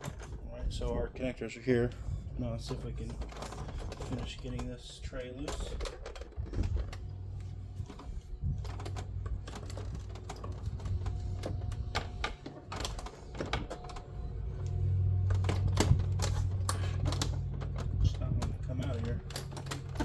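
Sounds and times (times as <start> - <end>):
steady low hum: 0.0 - 20.0
plastic tray clicking and creaking: 2.6 - 20.0.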